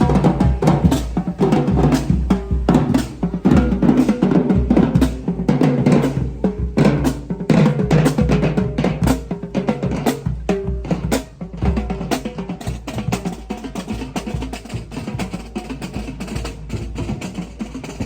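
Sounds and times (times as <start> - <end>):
drum ensemble playing fast rhythm: 0.0 - 18.0.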